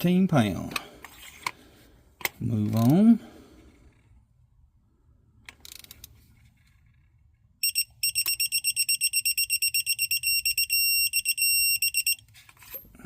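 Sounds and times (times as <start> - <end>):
ratchet clicks: 5.5 - 6.2
high-pitched electronic beeps: 7.6 - 12.2.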